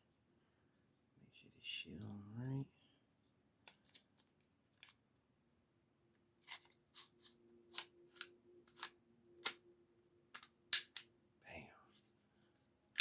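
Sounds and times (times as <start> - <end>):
pistol slide metallic clicks: 10.4 - 11.1.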